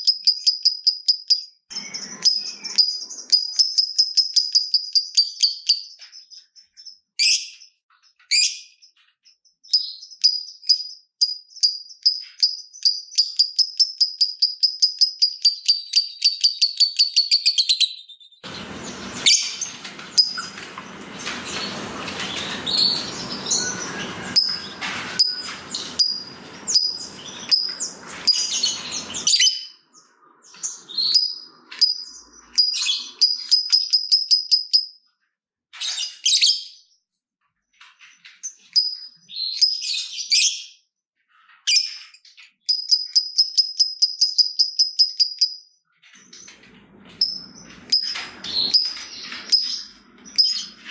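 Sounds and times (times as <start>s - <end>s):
rough noisy background: 18.4s - 29.4s
bird chattering calls: 18.4s - 29.6s
bird trilling: 18.4s - 29.8s.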